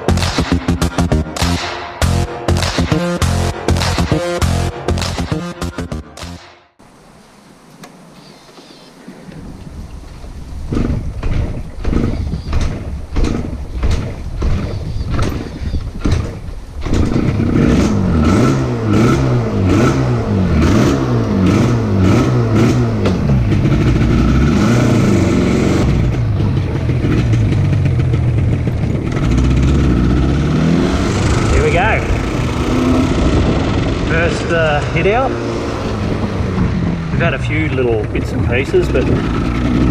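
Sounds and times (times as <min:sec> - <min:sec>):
two-stroke motorcycle engine revving: 0:10.7 - 0:39.9.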